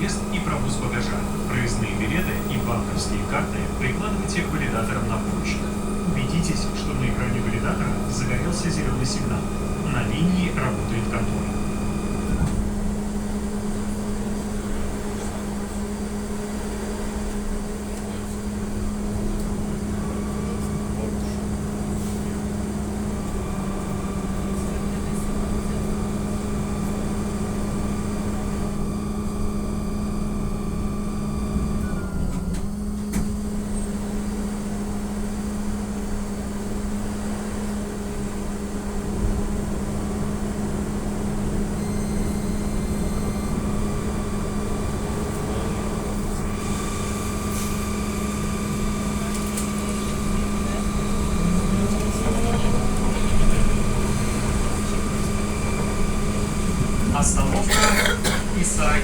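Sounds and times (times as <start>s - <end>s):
trolleybus electric hum: 0.0s - 59.0s
electric drive whine: 38.1s - 57.7s.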